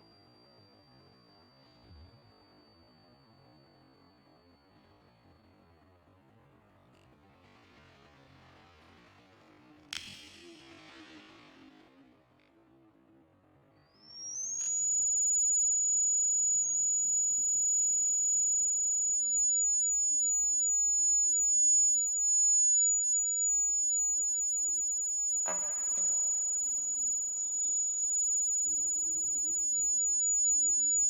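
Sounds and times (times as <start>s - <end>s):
high-pitched alarm buzzer: 14.2s - 31.0s.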